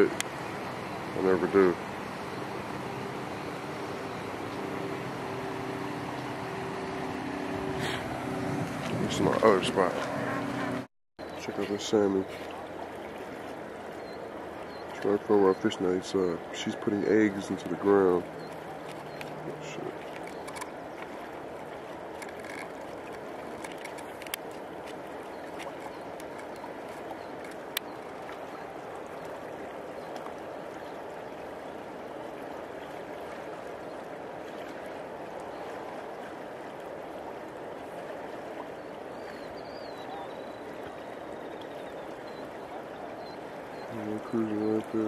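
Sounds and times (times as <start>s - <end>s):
river rushing over shallows: 0.0s - 45.0s.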